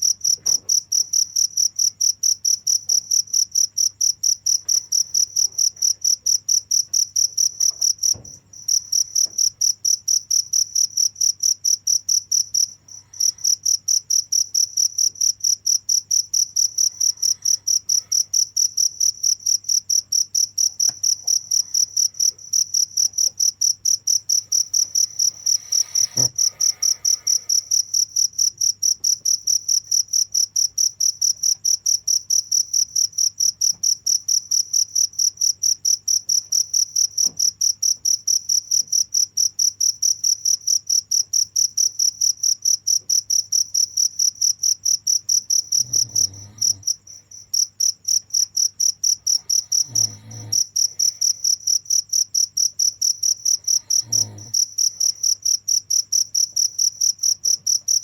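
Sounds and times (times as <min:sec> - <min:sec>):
cricket chirping: 0:00.0 - 0:58.0.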